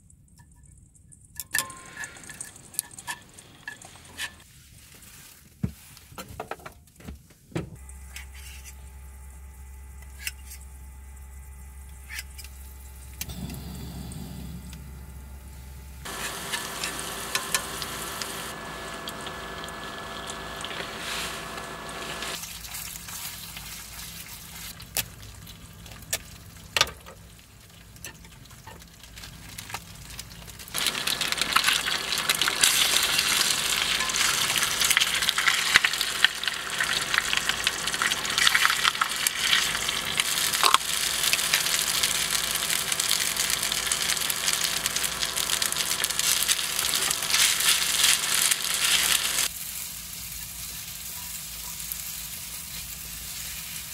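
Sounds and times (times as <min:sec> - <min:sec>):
food sizzling in a pan: 0:16.0 - 0:26.6, 0:30.2 - 0:53.9.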